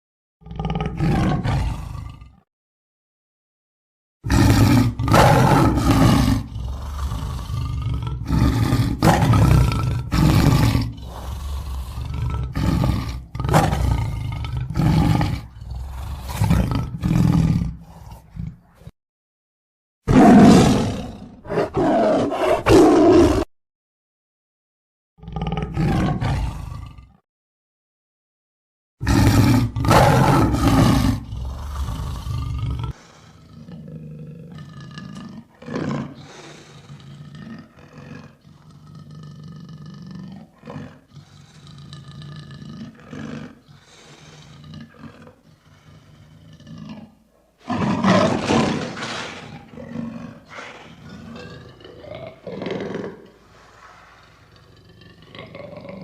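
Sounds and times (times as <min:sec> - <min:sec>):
lion roaring: 0:00.4 - 0:02.5, 0:04.2 - 0:18.9, 0:20.1 - 0:23.5, 0:25.2 - 0:27.2, 0:29.0 - 0:56.0
lion short calls: 0:50.5 - 0:51.0.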